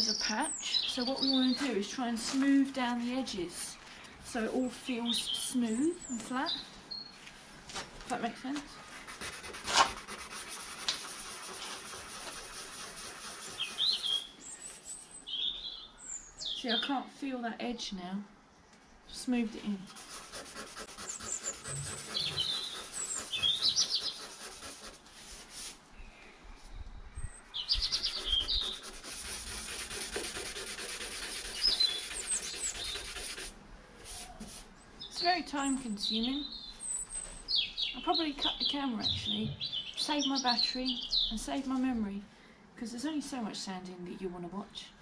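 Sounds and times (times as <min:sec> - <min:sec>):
bird chirping: 0:00.0 - 0:02.2, 0:04.9 - 0:07.2, 0:12.0 - 0:17.0, 0:18.5 - 0:24.7, 0:26.0 - 0:30.1, 0:30.8 - 0:33.4, 0:34.3 - 0:41.6
sandpaper rubbing on metal: 0:09.0 - 0:14.3, 0:19.9 - 0:25.8, 0:27.9 - 0:34.7.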